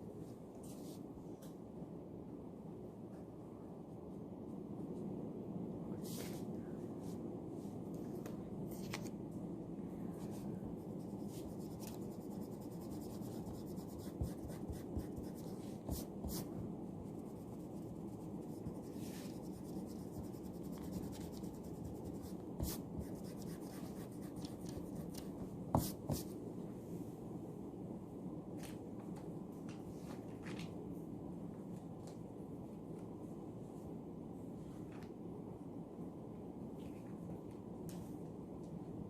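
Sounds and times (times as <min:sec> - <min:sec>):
low room hum: 0:00.0 - 0:39.0
pencil scratching on paper: 0:10.3 - 0:26.3.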